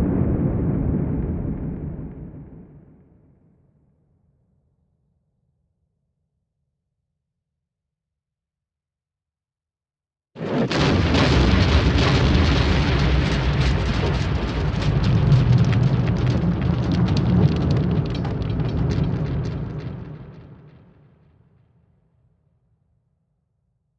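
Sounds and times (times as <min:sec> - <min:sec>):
deep rumble with crackling: 0:00.0 - 0:03.3, 0:10.4 - 0:21.1
explosion blast: 0:00.0 - 0:03.3, 0:10.4 - 0:21.1.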